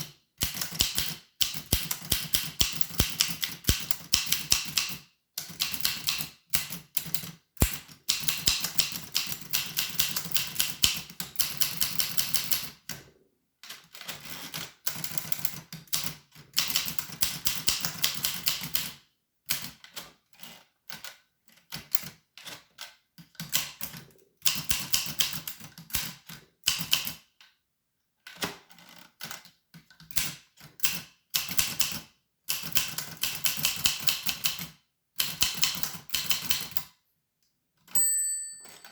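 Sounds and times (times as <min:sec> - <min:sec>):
typewriter keys striking: 0:00.4 - 0:12.7, 0:30.1 - 0:36.8.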